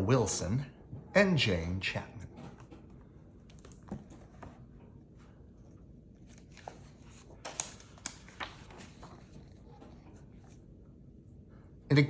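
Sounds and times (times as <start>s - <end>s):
paper pages rustling: 2.6s - 10.7s.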